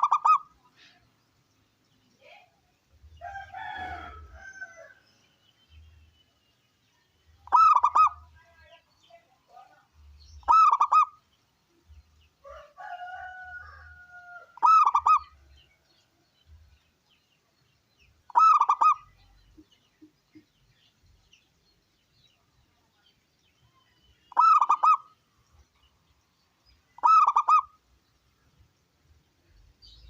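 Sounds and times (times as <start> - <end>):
dove cooing: 0.0 - 0.5, 7.4 - 8.2, 10.5 - 11.2, 14.6 - 15.3, 18.3 - 19.0, 24.3 - 25.1, 27.0 - 27.8
soft bird calls: 0.0 - 30.0.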